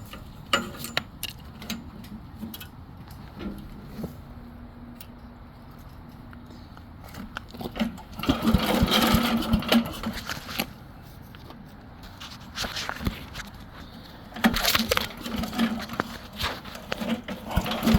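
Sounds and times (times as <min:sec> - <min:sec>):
loud clattering and clicks: 0:07.8 - 0:10.6, 0:14.4 - 0:17.9.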